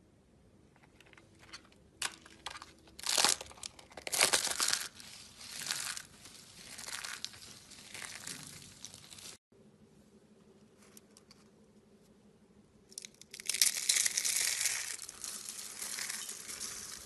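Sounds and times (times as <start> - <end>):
crinkling and crumpling: 0.8 - 9.4, 13.0 - 17.0.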